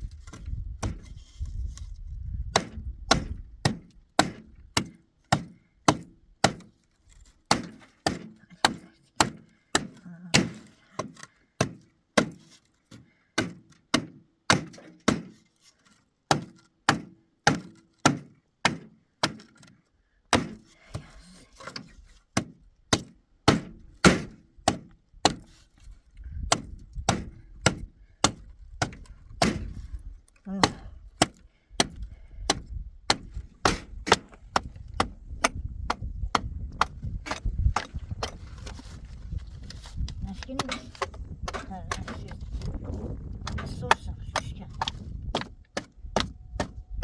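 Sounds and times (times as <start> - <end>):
hammering on wood: 22.4 - 25.4, 26.5 - 29.6, 30.6 - 37.9, 43.4 - 46.8.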